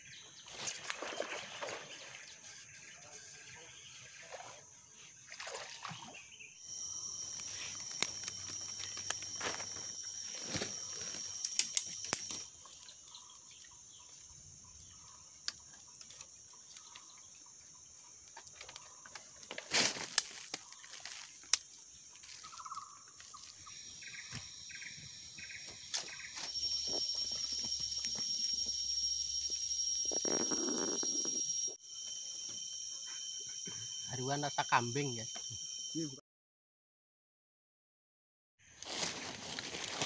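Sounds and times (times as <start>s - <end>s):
high-pitched insect drone: 5.8s - 17.2s, 17.8s - 36.2s.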